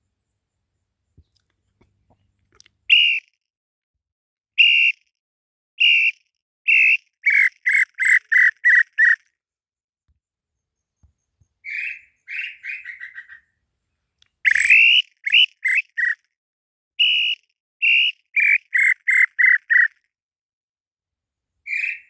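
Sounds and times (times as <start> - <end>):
bird whistled notes: 2.9 - 3.2, 14.4 - 16.2, 17.0 - 19.9.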